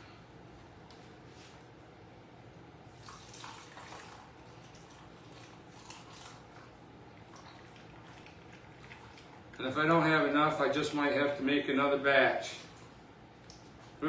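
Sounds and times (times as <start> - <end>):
liquid trickling into a jar: 2.9 - 9.6.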